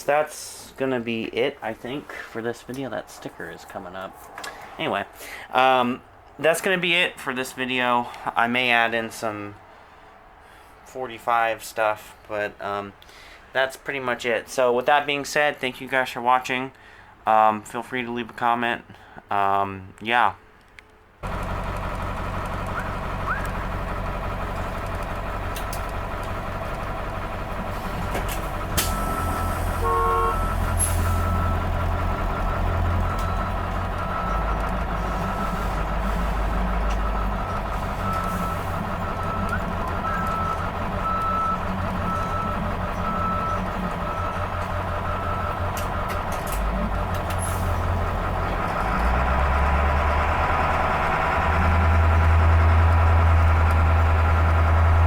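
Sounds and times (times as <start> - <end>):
bus diesel engine running: 0.0 - 10.8, 21.2 - 55.0
reverse alarm beeping: 28.8 - 36.2, 36.9 - 45.7.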